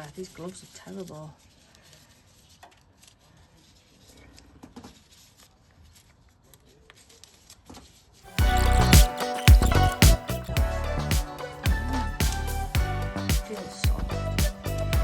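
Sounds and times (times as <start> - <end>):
loud music: 8.3 - 15.0.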